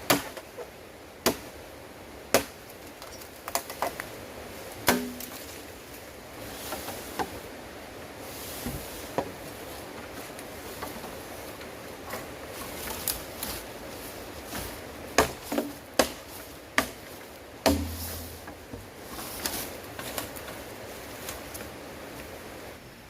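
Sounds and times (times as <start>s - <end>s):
knocking impacts on wood: 17.6s - 18.2s.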